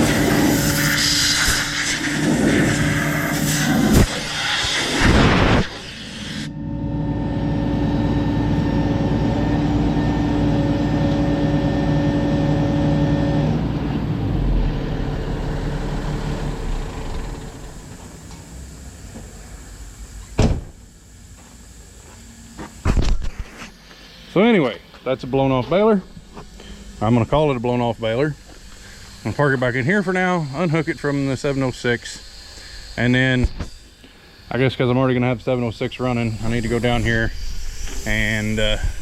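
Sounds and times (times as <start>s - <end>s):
blower blasting air: 0.0s - 39.0s
sharp knock: 20.4s - 20.8s.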